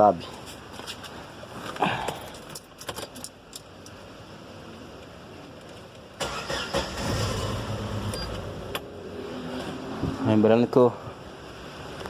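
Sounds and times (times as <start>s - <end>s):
car engine cranking and starting: 6.2s - 8.9s.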